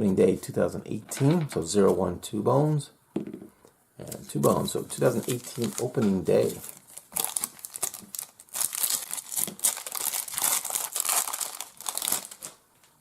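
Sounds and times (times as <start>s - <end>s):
foil wrapper tearing and crinkling: 5.0s - 12.6s.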